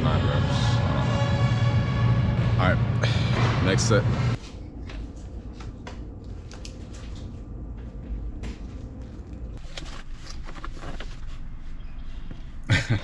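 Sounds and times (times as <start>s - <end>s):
low rumble of room noise: 0.0s - 13.0s.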